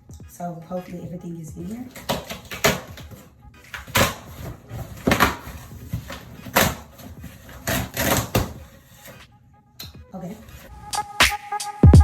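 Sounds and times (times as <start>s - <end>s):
cardboard box knocks and scrapes: 3.8s - 8.7s.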